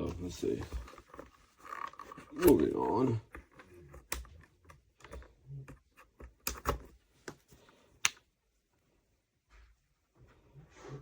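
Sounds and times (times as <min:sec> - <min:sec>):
plastic plugs clicking: 0:01.8 - 0:07.4.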